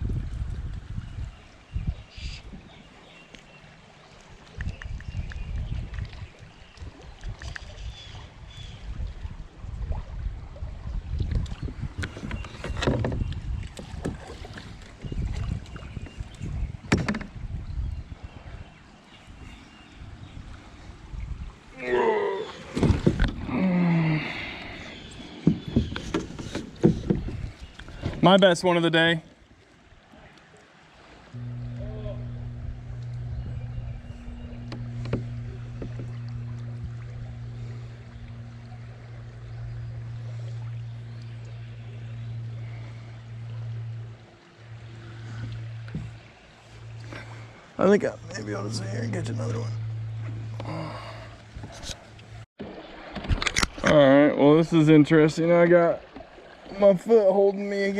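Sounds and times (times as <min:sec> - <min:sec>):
wind rumble on microphone: 0:00.0 - 0:02.8, 0:04.4 - 0:21.9, 0:31.4 - 0:52.4
small knocks: 0:16.9 - 0:17.3, 0:34.6 - 0:36.6
knocks on kayak: 0:16.9 - 0:17.4, 0:22.7 - 0:23.4
water splashing: 0:20.5 - 0:57.9
low hum: 0:31.2 - 0:55.2.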